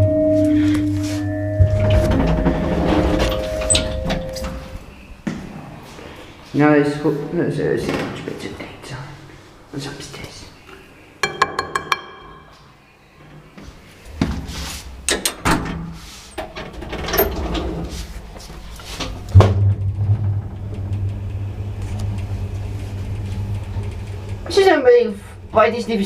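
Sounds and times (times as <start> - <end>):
lift drive humming: 0.0 - 5.1
lift doors sliding shut: 1.0 - 5.8, 14.1 - 24.8.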